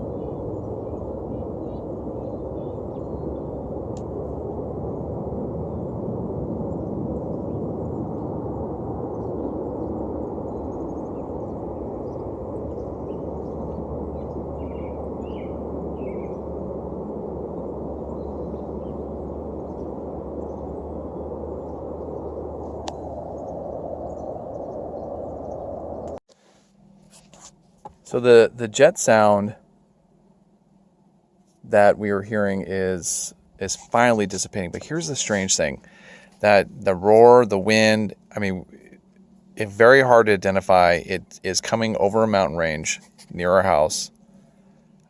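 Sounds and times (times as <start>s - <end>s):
low roar from the sky: 0.0s - 26.2s, 31.0s - 45.0s.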